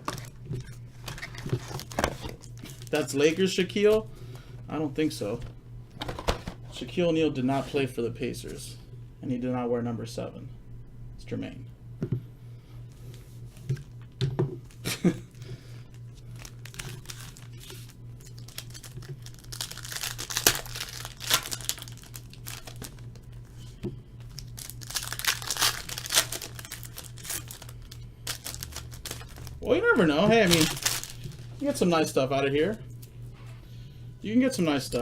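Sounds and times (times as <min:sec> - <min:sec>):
steady low hum: 0:00.0 - 0:35.0
foil wrappers tearing and crinkling: 0:01.0 - 0:03.4, 0:16.2 - 0:23.3, 0:24.2 - 0:31.6.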